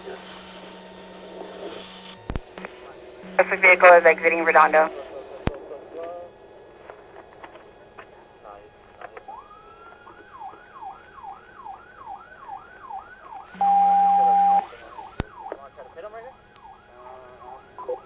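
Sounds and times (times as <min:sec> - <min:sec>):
loud steady tone: 0:02.5 - 0:05.4, 0:13.2 - 0:18.0
police siren yelping: 0:09.3 - 0:15.6, 0:16.6 - 0:18.0.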